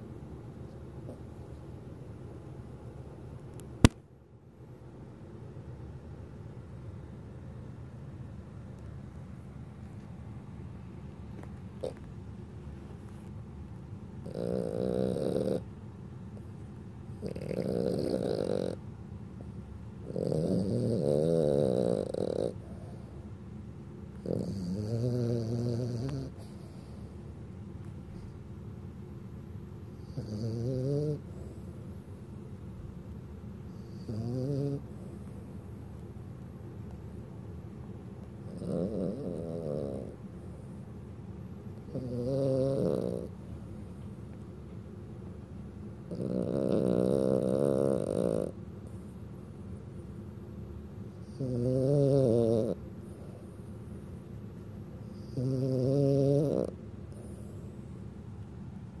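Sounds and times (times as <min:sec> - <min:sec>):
dog snoring: 0:01.0 - 0:01.4, 0:11.8 - 0:12.1, 0:14.2 - 0:15.7, 0:16.4 - 0:23.2, 0:24.1 - 0:27.1, 0:30.0 - 0:32.2, 0:33.7 - 0:35.6, 0:38.4 - 0:40.8, 0:41.8 - 0:44.1, 0:46.0 - 0:49.6, 0:51.2 - 0:54.2, 0:55.0 - 0:58.0.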